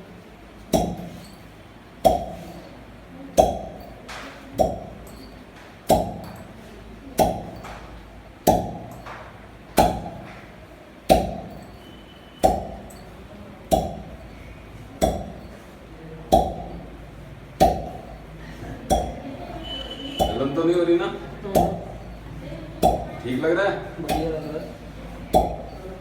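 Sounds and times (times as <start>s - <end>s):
clinking strike with short ring: 4.8s - 5.4s, 11.4s - 13.2s.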